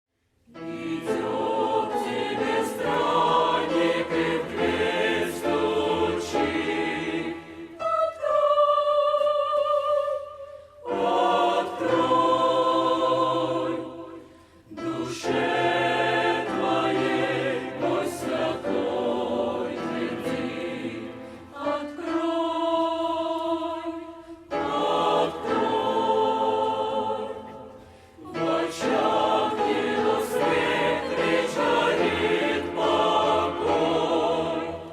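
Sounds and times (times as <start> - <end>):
choir breaths: 0.4 - 34.9
choir singing a hymn: 0.5 - 34.9.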